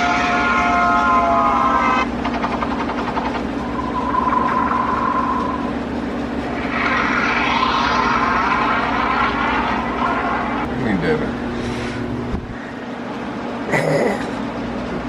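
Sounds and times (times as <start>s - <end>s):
gliding siren-like notes: 0.0s - 10.7s
noisy rumble with steady tone: 0.0s - 15.0s.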